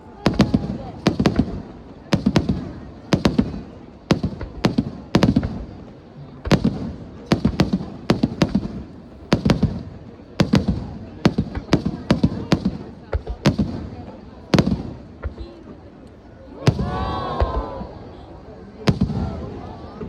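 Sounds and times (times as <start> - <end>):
fireworks bursting: 0.1 - 15.9, 16.6 - 18.2, 18.8 - 20.0.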